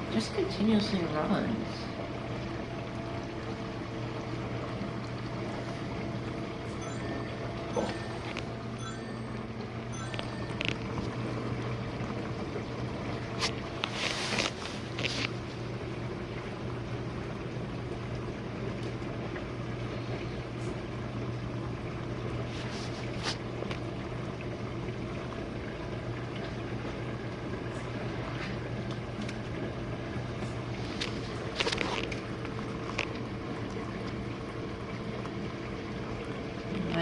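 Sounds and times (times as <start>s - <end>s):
dishwasher motor hum: 0.0s - 37.0s
water spraying and sloshing: 10.1s - 20.9s, 22.2s - 37.0s.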